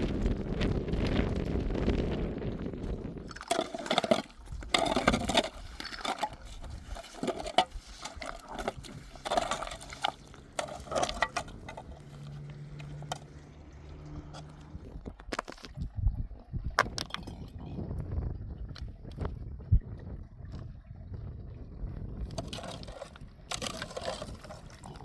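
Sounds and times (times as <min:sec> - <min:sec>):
water splashing and sloshing: 0:00.0 - 0:17.8, 0:18.4 - 0:25.0
low steady hum: 0:00.0 - 0:25.0
wind rumbling on microphone: 0:00.0 - 0:25.0.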